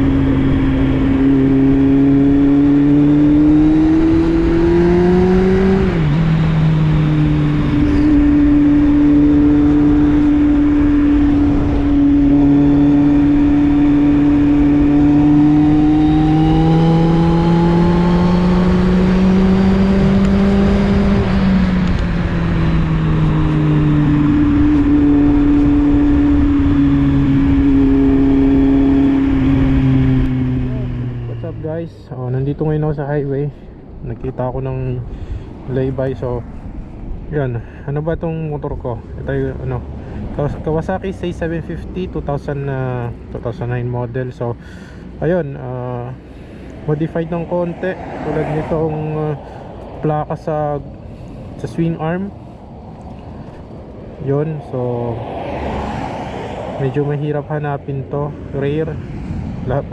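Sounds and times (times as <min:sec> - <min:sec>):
motorcycle engine accelerating: 0:00.0 - 0:31.8
wind and road rumble: 0:00.0 - 0:59.9.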